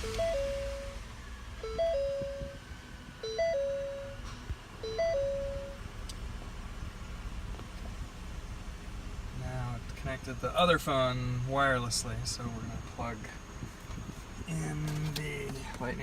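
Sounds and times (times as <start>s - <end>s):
dashboard warning chime: 0.0s - 5.9s.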